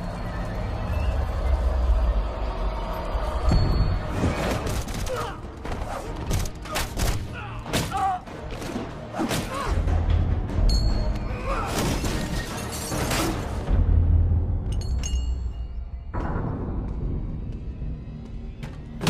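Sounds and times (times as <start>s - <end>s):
dramatic film music: 0.0s - 19.0s.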